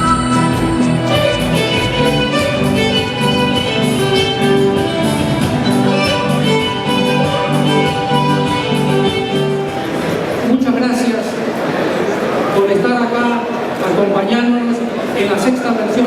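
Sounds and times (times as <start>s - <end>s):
bowed strings holding notes: 0.0s - 10.5s.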